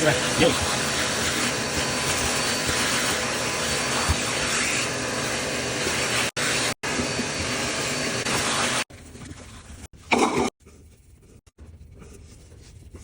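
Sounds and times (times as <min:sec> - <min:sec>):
shop vacuum running: 0:00.0 - 0:08.9.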